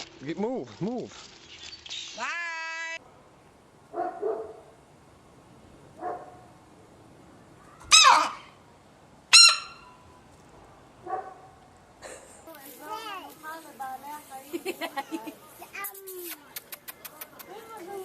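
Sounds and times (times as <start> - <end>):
dog barking sharply: 7.9 - 8.5.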